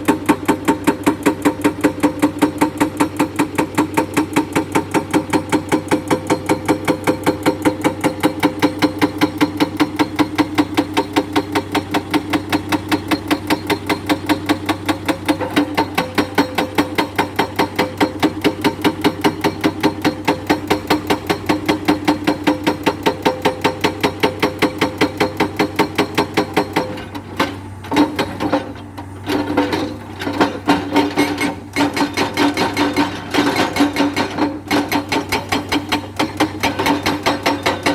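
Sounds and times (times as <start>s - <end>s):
excavator engine humming: 0.0s - 37.9s
hydraulic breaker hammering rock: 0.0s - 37.9s.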